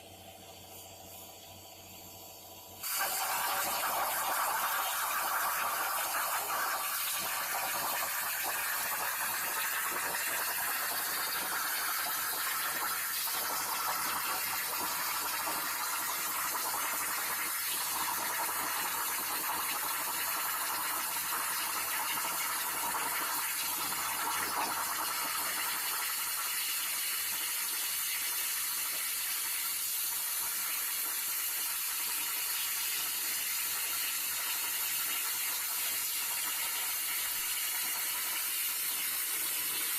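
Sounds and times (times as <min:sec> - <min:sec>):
plasma torch hissing: 0:00.5 - 0:18.4.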